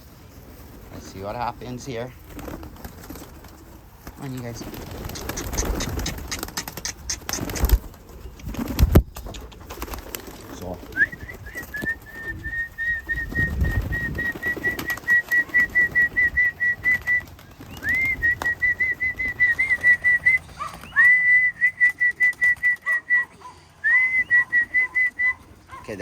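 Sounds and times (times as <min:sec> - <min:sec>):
person whistling trilled phrases: 0:10.9 - 0:25.4.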